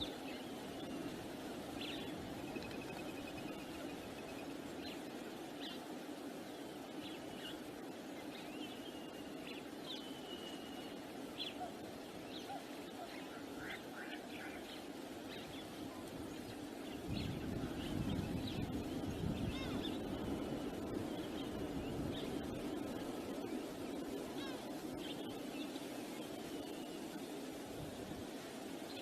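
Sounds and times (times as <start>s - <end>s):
wind buffeting microphone: 15.0s - 28.8s.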